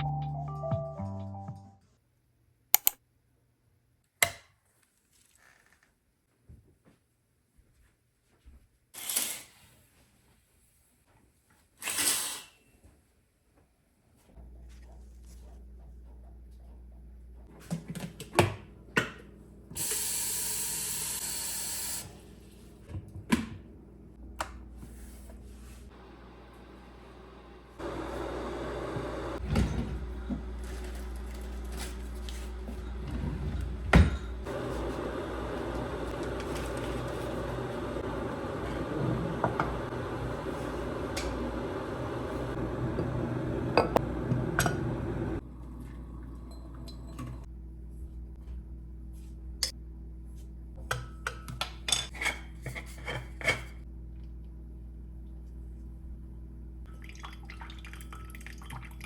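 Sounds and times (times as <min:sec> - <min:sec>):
dishes and utensils clattering: 0:50.8 - 0:53.8.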